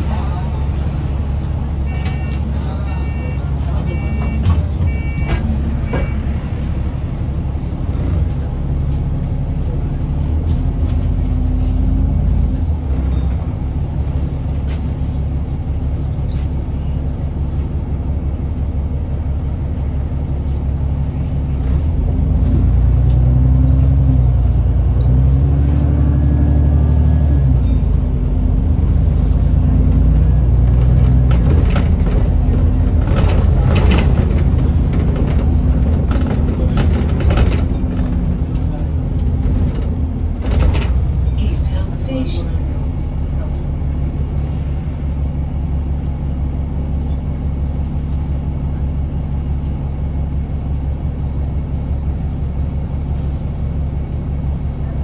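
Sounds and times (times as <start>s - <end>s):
bus diesel engine accelerating: 0.0s - 55.0s.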